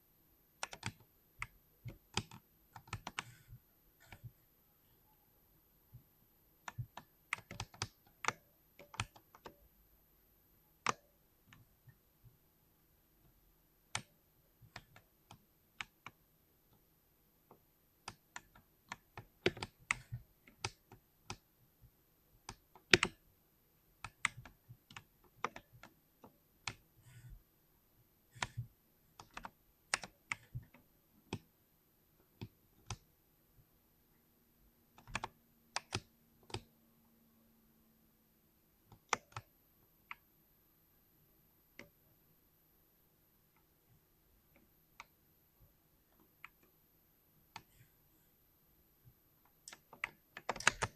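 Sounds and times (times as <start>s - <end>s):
mechanical keyboard typing: 0.6s - 1.1s, 1.9s - 4.3s, 6.7s - 9.6s, 24.0s - 26.0s, 35.0s - 36.7s, 49.6s - 50.9s.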